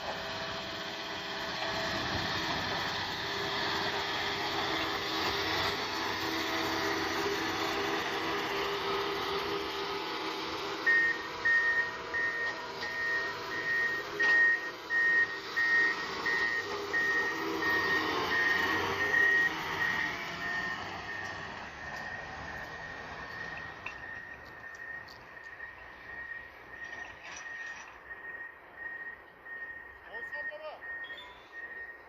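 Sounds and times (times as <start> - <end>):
grader engine running: 0.0 - 32.0
reversing alarm beeping: 10.4 - 32.0.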